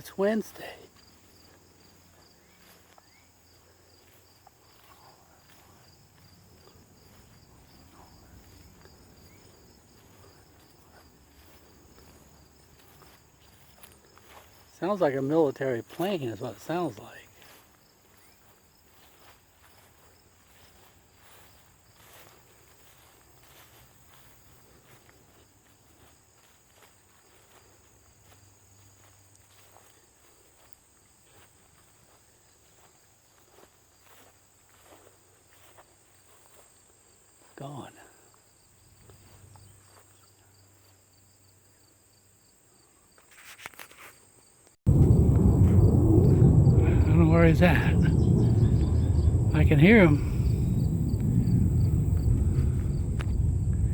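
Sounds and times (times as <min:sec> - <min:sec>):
insects chirping: 0:00.0 - 0:53.9
distant jet rumble: 0:44.9 - 0:53.9
faint low hum: 0:44.9 - 0:53.9.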